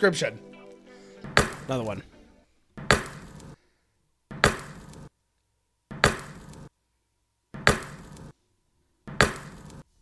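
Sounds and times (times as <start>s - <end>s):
sharp chop-like knock: 1.3s - 1.7s, 2.8s - 3.3s, 4.3s - 4.8s, 5.9s - 6.4s, 9.1s - 9.6s.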